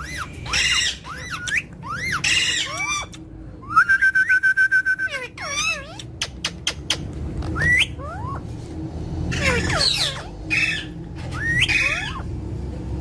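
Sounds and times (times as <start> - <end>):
parrot squawking: 0.0 - 3.2, 5.0 - 8.4, 9.3 - 12.3
parrot whistling in rising glides: 0.0 - 5.9, 7.6 - 8.5, 9.3 - 12.3.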